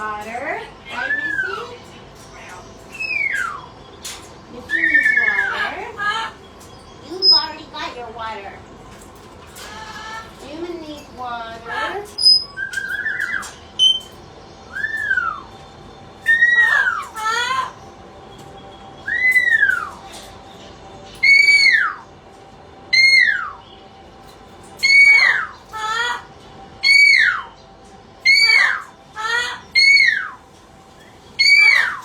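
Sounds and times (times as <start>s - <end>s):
parrot whistling: 0.8s - 8.0s, 11.5s - 20.4s, 21.1s - 22.2s, 22.9s - 23.8s, 24.8s - 32.0s.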